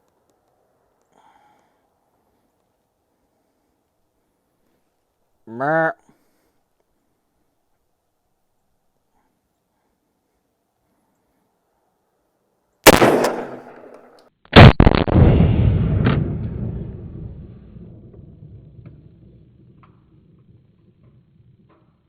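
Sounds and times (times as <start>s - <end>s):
shotgun shots: 12.8s - 16.4s
gunshot echo: 12.8s - 20.2s.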